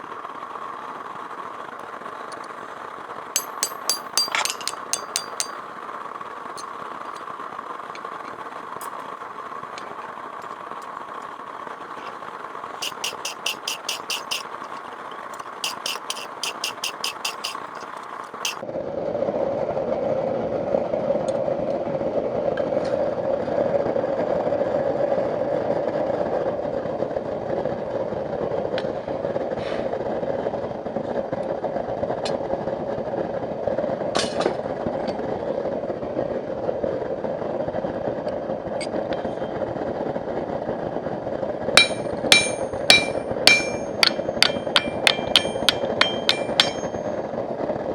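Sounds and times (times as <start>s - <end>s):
hammer ringing on anvil: 3.4s - 5.6s, 12.8s - 14.8s, 15.4s - 18.6s, 41.8s - 47.2s
light metal clinks: 3.4s - 5.6s, 12.8s - 18.6s, 41.8s - 47.1s.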